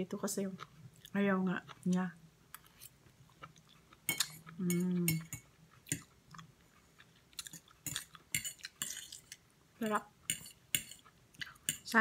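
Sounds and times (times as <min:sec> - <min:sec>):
person humming: 0:04.6 - 0:05.3.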